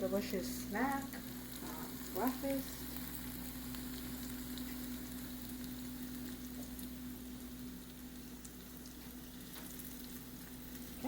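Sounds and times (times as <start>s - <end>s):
toast sizzling in a pan: 0.0s - 11.0s.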